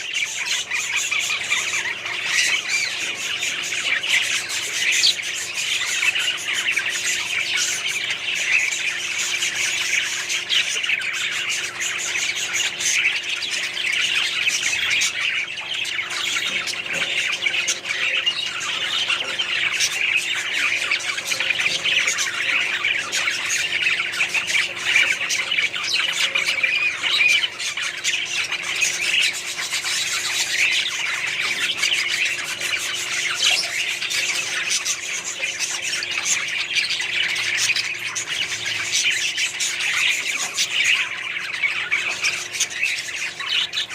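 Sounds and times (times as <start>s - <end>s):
parrots squawking and chirping: 0.0s - 43.9s.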